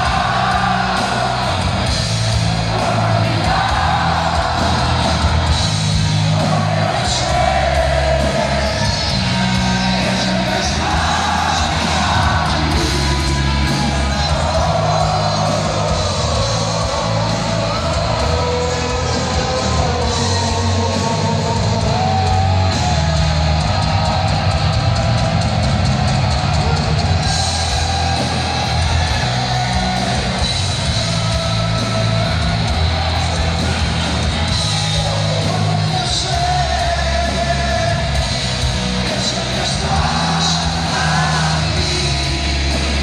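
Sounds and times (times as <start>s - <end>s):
heavy metal band playing: 0.0s - 43.0s
person singing: 34.7s - 38.3s.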